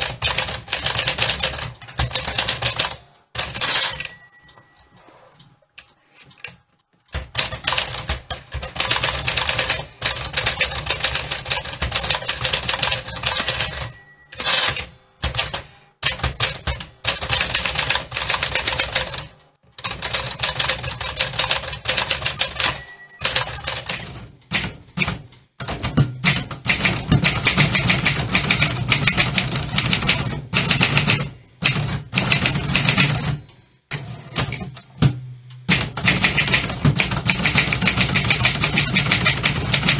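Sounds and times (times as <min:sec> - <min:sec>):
typewriter bell ringing: 0:03.4 - 0:05.6, 0:11.6 - 0:15.6, 0:20.7 - 0:24.2, 0:32.2 - 0:34.5.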